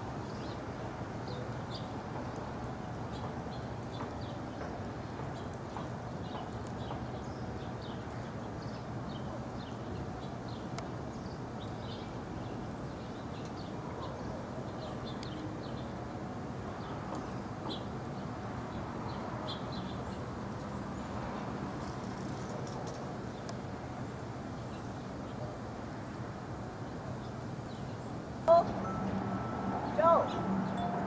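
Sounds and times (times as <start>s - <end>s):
birds chirping: 26.9s - 31.0s.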